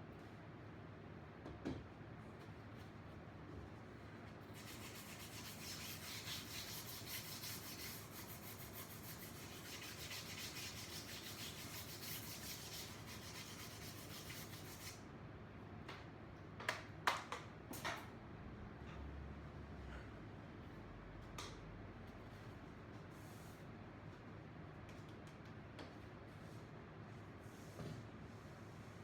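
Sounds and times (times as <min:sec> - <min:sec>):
sandpaper rubbing on wood: 0:04.6 - 0:15.0.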